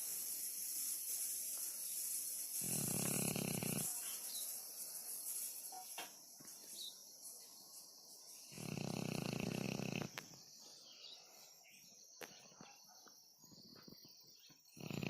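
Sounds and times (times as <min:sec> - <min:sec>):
dog breathing: 0:02.2 - 0:04.0, 0:08.5 - 0:10.2
dog snoring: 0:02.5 - 0:04.0, 0:08.5 - 0:10.2, 0:14.7 - 0:15.0.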